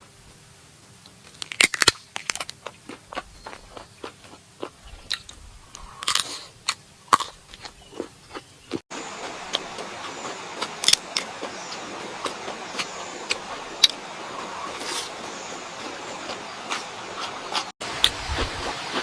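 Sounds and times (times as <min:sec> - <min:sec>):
person chewing crunchy food: 0:01.4 - 0:19.0.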